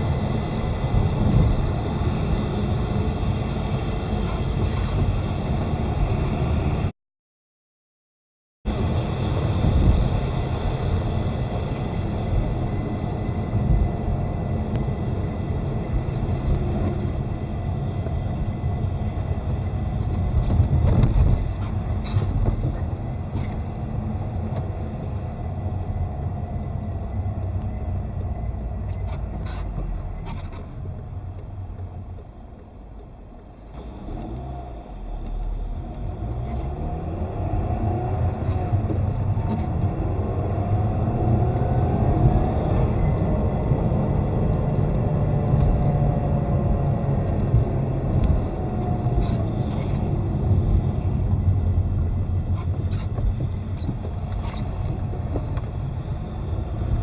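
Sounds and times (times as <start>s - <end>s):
car engine and road noise: 0.0s - 6.9s, 8.7s - 57.0s.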